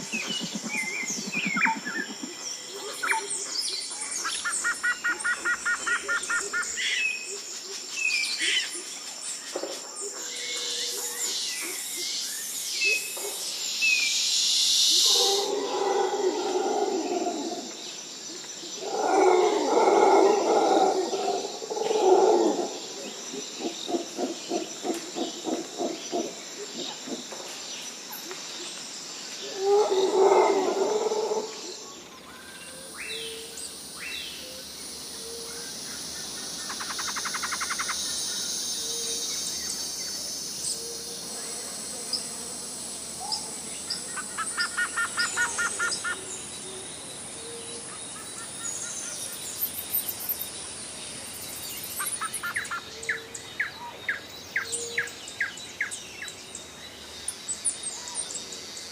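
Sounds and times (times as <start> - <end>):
bird chirps: 0.0 - 6.6
insect and bird chorus: 0.0 - 58.9.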